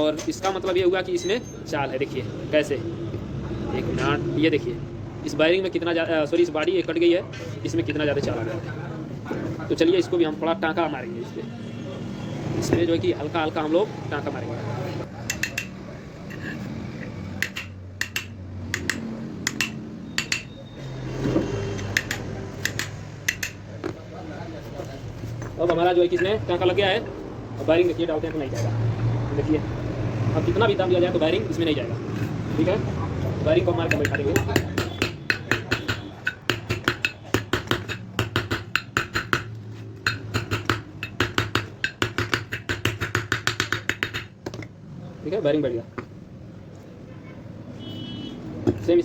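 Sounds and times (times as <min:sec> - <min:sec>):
hammer tapping a punch on metal: 0:15.2 - 0:15.8, 0:17.4 - 0:20.6, 0:21.8 - 0:23.7, 0:33.8 - 0:44.7.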